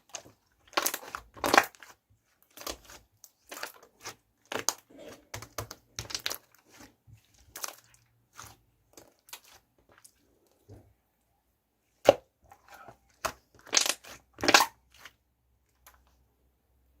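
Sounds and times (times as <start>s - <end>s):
slime squishing with sticky pops: 0.0s - 10.2s, 11.9s - 15.2s.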